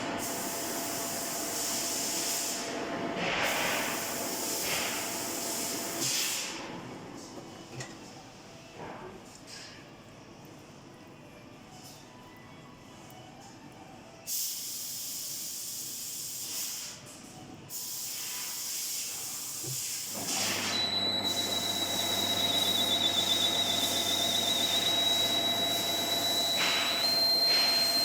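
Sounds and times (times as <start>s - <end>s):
metal lathe hissing: 19.5s - 28.0s
machine running with high whine: 20.2s - 28.0s.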